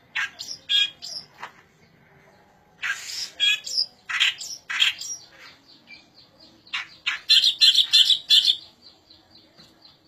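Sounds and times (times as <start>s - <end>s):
bird scratchy chattering song: 0.0s - 1.5s, 2.8s - 9.2s.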